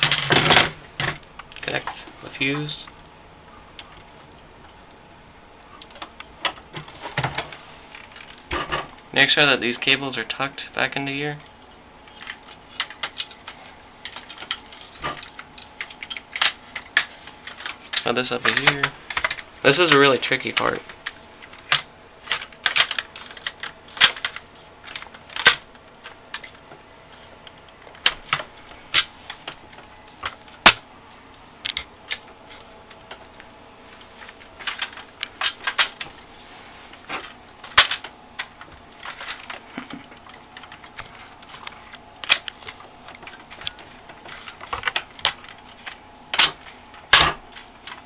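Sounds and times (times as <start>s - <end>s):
plastic parts clicking and knocking: 0.0s - 1.8s, 12.1s - 26.6s, 37.1s - 48.0s.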